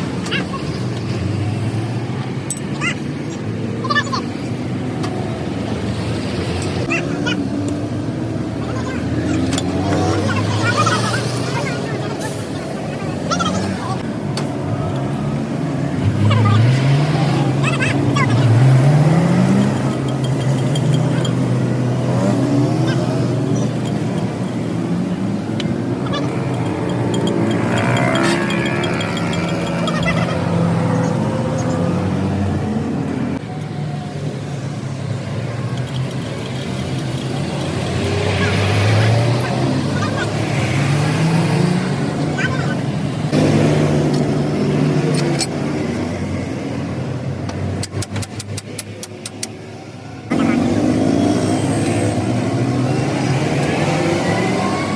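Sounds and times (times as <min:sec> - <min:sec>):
vehicle engine running: 0:14.9 - 0:33.7.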